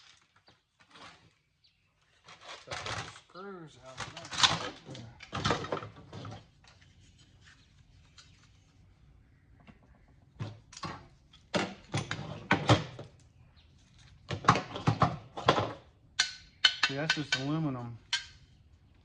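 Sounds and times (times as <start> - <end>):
metal parts clattering and rattling: 3.9 - 7.3.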